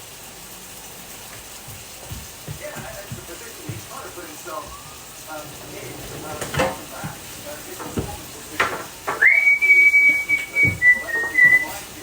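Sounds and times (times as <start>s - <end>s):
high whistle: 9.2s - 11.8s.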